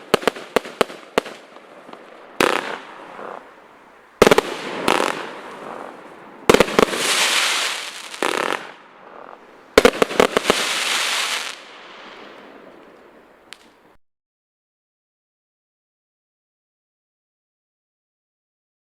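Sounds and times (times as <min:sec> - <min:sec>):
firework bangs: 0:00.0 - 0:13.8
firework crackle: 0:00.0 - 0:13.9.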